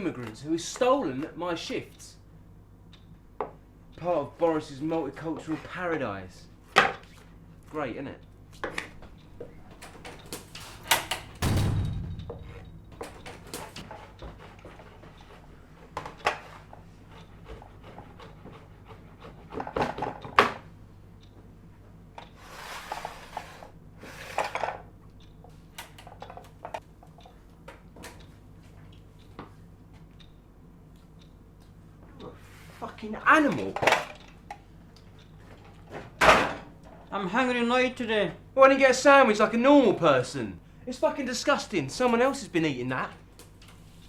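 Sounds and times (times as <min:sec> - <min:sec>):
heavy thud: 0:10.7 - 0:13.8.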